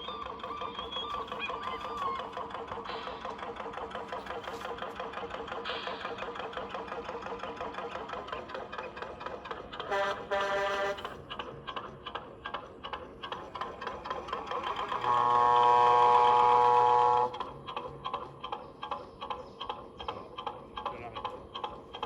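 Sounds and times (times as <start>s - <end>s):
diesel engine chugging from speaker: 0.0s - 22.0s
ship's horn blast: 9.9s - 11.0s, 15.0s - 17.4s.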